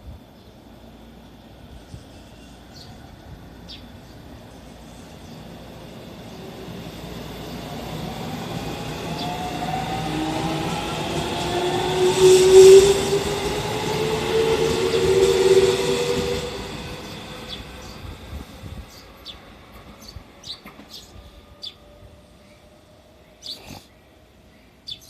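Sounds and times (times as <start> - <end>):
train wheel and rail noise: 0.0 - 23.3
electric train motors whining: 5.4 - 18.9.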